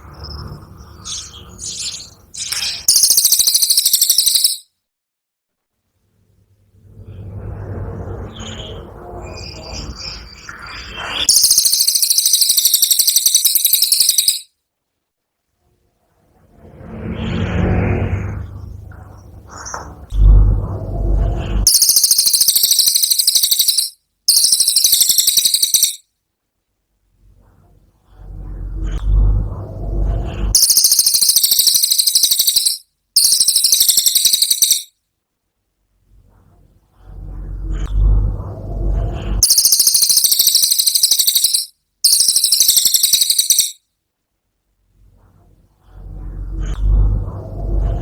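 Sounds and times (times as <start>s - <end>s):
songbird high buzzing trills: 2.8s - 4.6s, 11.3s - 14.4s, 21.7s - 26.0s, 30.6s - 34.9s, 39.4s - 43.8s.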